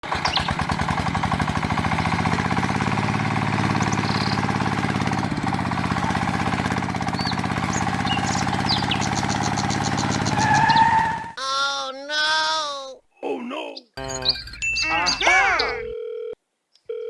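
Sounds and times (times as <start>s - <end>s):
small engine running: 0.0s - 11.4s.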